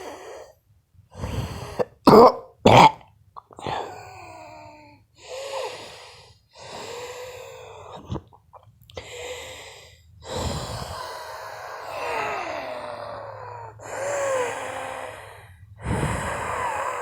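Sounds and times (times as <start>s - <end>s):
person wheezing: 3.6s - 5.9s, 10.2s - 17.0s.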